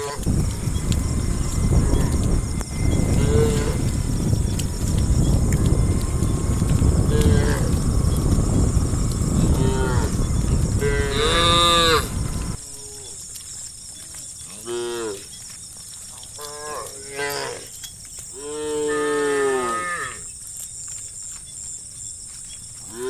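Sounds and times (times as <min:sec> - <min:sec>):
loud low rushing noise: 0:00.4 - 0:12.6
cattle mooing: 0:02.8 - 0:04.1, 0:05.8 - 0:07.9, 0:09.4 - 0:12.3.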